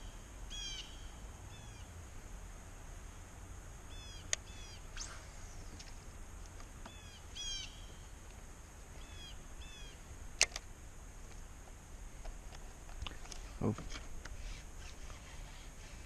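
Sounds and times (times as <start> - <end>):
birds chirping: 0.0 - 2.0, 3.8 - 10.6
low steady rumble: 0.0 - 16.0
sharp clicks: 10.4 - 10.7.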